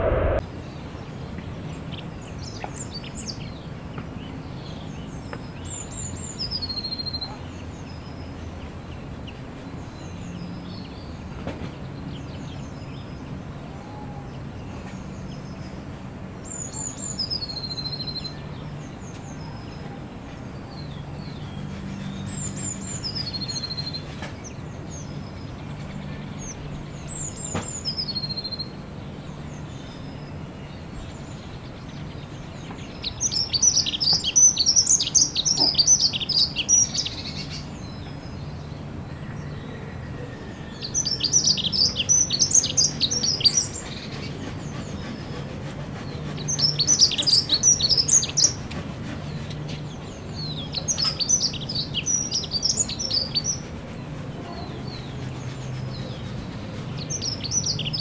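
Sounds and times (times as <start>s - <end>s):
faint low hum: 0.0s - 1.8s.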